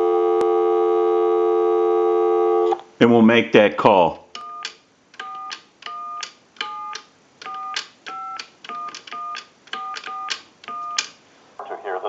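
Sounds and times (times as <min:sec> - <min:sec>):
keypad key clicks: 0:04.4 - 0:11.2.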